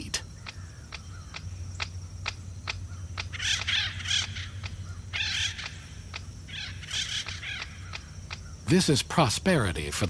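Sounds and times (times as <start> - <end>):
harsh squawking bird calls: 0.0 - 8.7
woodpecker tapping: 0.4 - 4.8, 7.0 - 8.5.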